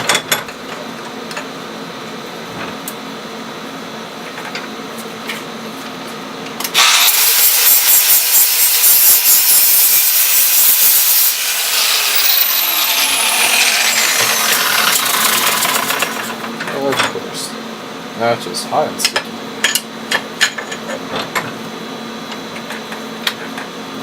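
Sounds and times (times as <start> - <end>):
power tool grinding metal: 6.8 - 16.4.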